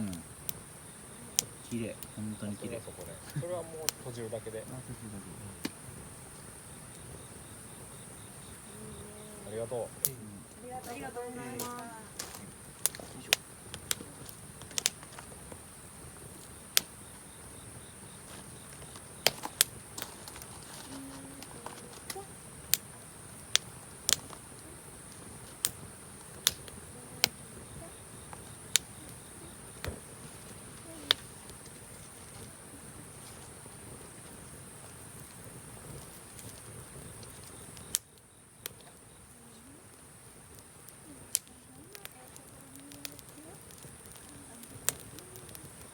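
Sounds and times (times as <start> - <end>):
campfire wood cracking and popping: 0.0 - 45.9
night insects chorus: 0.0 - 45.9.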